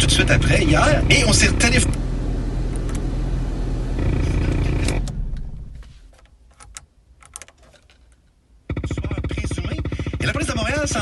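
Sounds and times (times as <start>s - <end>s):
car engine low rumble: 0.0s - 7.1s, 8.4s - 11.0s
car exhaust clicks and pops: 4.0s - 11.0s.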